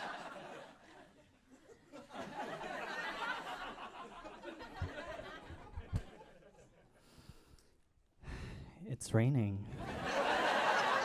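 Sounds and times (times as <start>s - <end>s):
audience laughing: 0.0s - 7.0s, 9.8s - 11.0s.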